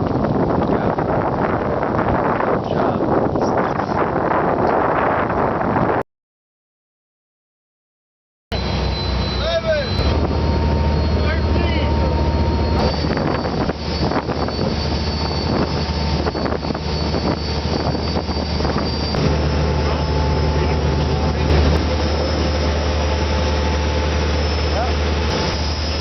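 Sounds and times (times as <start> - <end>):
boat engine humming: 8.5 - 26.0.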